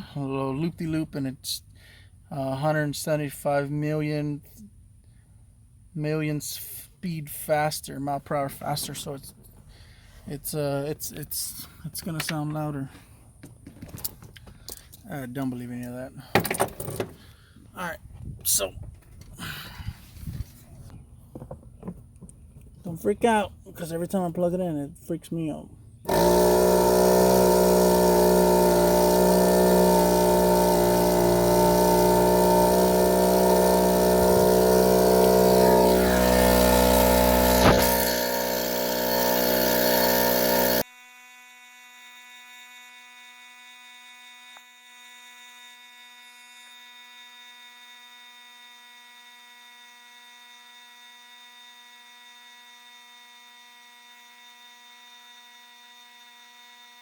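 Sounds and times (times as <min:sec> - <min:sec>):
air compressor running: 0:16.2 - 0:18.0, 0:26.0 - 0:57.0.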